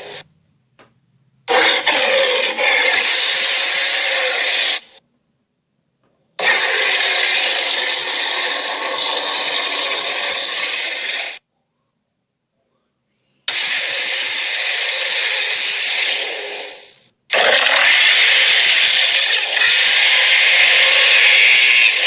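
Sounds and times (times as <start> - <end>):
harsh creature roar: 1.5 - 5.0, 6.4 - 11.4, 13.5 - 22.0.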